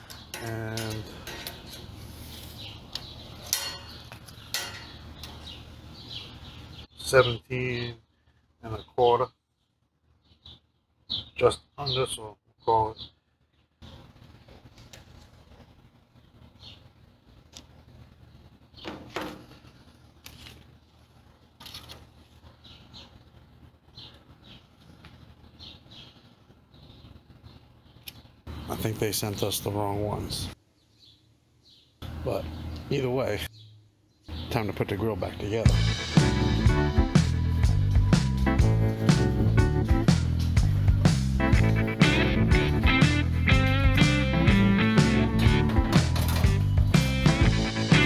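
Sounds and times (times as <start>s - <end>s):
parts and packaging handling noises: 0.0s - 5.6s, 18.8s - 22.6s
soft rustling: 1.1s - 3.4s
scrapes and knocks: 18.8s - 20.6s
steady low hum: 35.6s - 48.0s.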